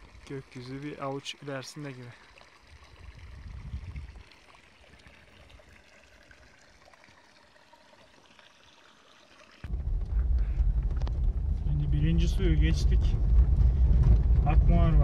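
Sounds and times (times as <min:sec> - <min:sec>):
stream running water: 0:00.0 - 0:09.8
low rumble: 0:09.7 - 0:15.0.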